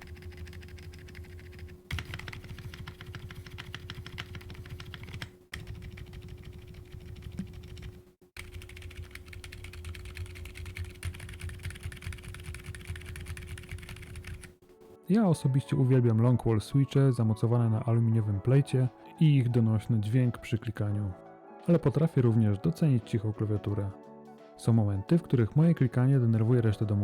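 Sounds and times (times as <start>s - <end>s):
fast typing on mechanical keyboard: 0.0s - 14.6s.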